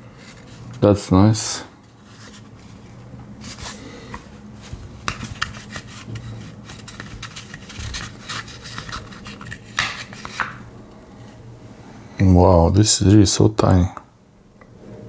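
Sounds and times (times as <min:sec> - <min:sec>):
packaging rustling: 0:05.0 - 0:10.6.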